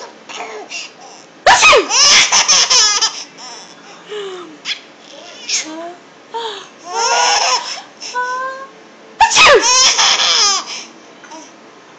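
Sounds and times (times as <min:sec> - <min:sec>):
baby laughing: 0:00.3 - 0:03.8, 0:06.8 - 0:07.9, 0:09.3 - 0:11.5.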